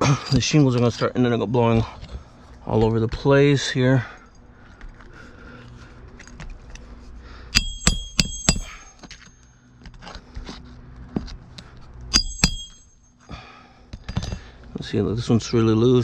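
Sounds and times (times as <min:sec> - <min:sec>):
hammer striking nails: 0:07.6 - 0:09.2, 0:12.1 - 0:12.9.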